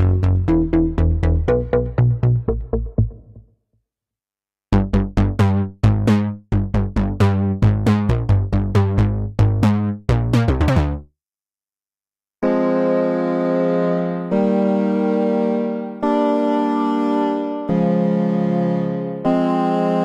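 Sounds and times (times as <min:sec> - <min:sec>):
plucky synthesizer bass notes: 0:00.0 - 0:03.5, 0:04.7 - 0:11.1.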